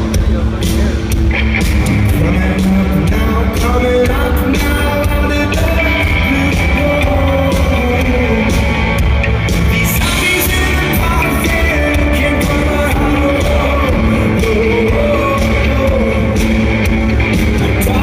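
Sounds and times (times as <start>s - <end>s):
person singing: 0.0s - 18.0s
rock band playing live: 0.0s - 18.0s.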